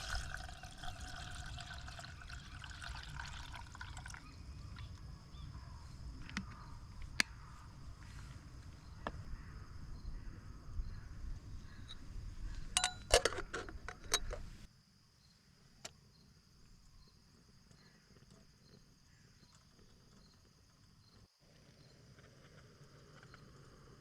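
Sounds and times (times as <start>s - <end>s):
camp gear clinking and knocking: 12.6s - 14.6s.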